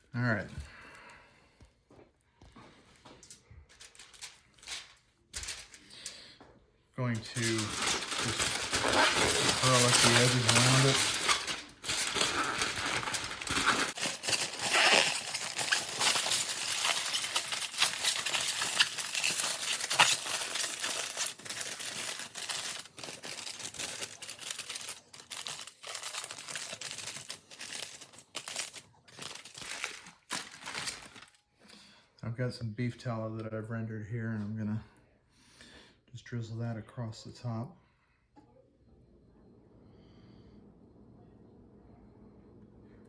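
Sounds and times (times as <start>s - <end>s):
aluminium foil crinkling: 3.2s - 6.4s, 7.0s - 31.4s.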